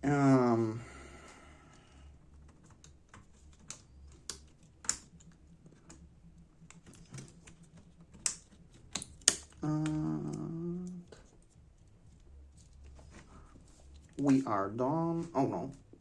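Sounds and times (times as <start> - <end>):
laptop keyboard clicks and taps: 6.6 - 10.1
sharp snaps: 8.2 - 11.2.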